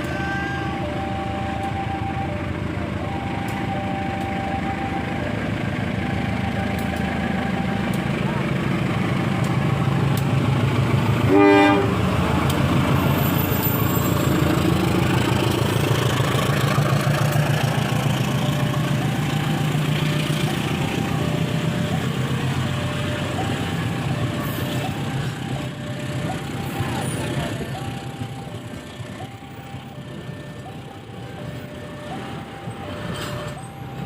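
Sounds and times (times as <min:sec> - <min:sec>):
diesel engine droning: 0:00.0 - 0:34.0
locomotive horn blast: 0:11.3 - 0:12.1.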